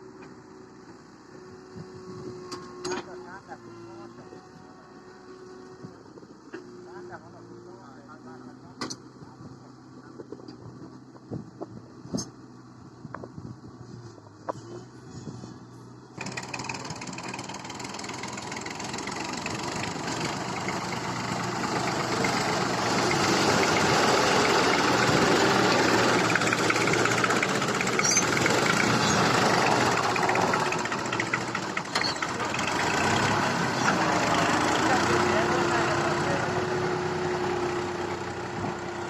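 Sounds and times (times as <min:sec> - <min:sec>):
tractor diesel engine running: 0:15.9 - 0:39.0.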